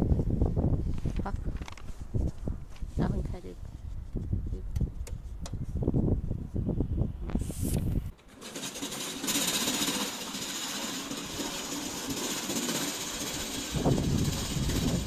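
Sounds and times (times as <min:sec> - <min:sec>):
lawn mower motor rattling: 0:08.0 - 0:15.0.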